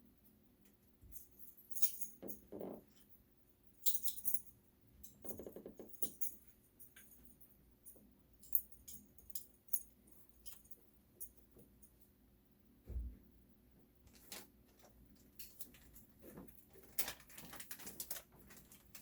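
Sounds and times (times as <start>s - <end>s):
metal parts clinking: 1.4s - 2.4s, 3.8s - 7.3s.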